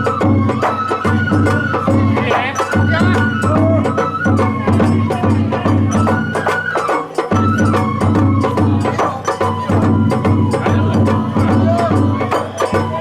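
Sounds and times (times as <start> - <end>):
bamboo flute melody: 0.0 - 13.0
clanging metal percussion: 0.0 - 13.0
quick drum strokes: 0.0 - 13.0.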